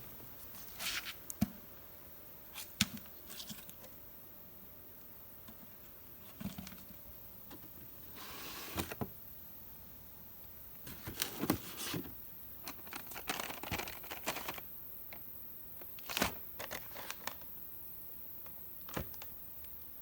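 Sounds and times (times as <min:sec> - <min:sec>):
packages crinkling: 0:10.9 - 0:14.7, 0:15.9 - 0:17.5.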